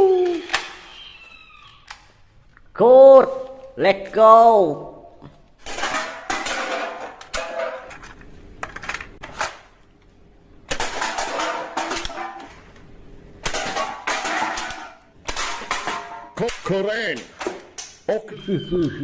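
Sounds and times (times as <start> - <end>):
plastic toy pieces clattering: 5.6 - 9.7.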